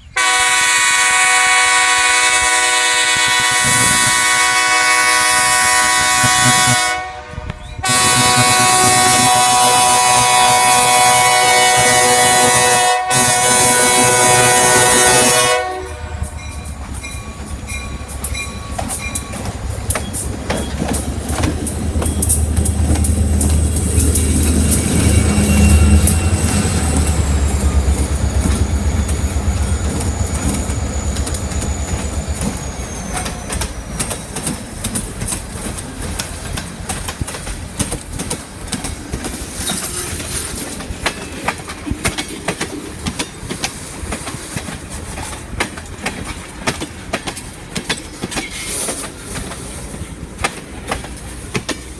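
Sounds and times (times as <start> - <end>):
diesel locomotive engine rumble: 0.0 - 51.9
train horn: 0.1 - 16.7, 24.0 - 29.8, 39.6 - 40.6
wheels clacking over rail joints: 11.8 - 51.9
high wheel squeal: 23.8 - 34.6.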